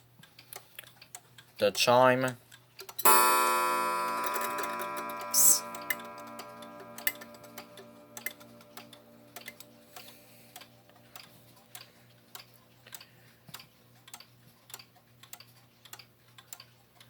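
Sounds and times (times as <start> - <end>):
wall clock ticking: 0.0 - 17.0
ringing chime tone: 3.1 - 9.6.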